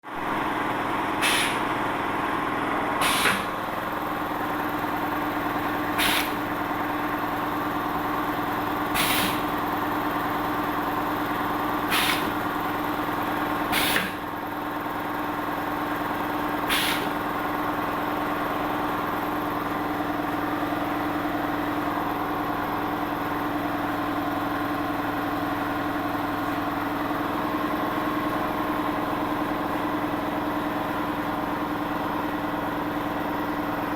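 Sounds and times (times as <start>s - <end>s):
press hissing: 1.2s - 1.7s, 3.0s - 3.5s, 5.9s - 6.4s, 8.9s - 9.5s, 11.9s - 12.3s, 13.7s - 14.2s, 16.7s - 17.2s.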